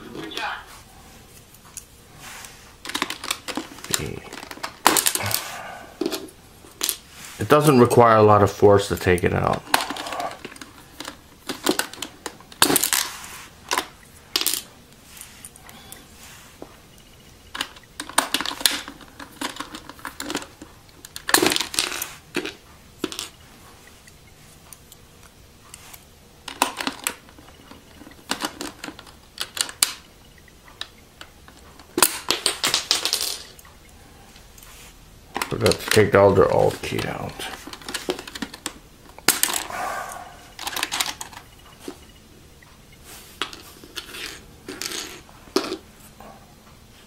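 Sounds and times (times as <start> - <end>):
keycaps clicking and clattering: 2.8 - 7.0, 8.9 - 13.1, 17.0 - 34.5, 35.3 - 39.7, 40.5 - 42.2.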